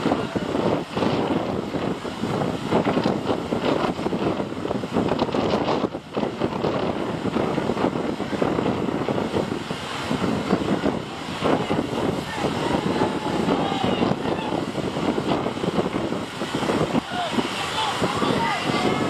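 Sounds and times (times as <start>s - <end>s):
boat engine running: 0.0s - 19.0s
wind buffeting microphone: 0.0s - 19.0s.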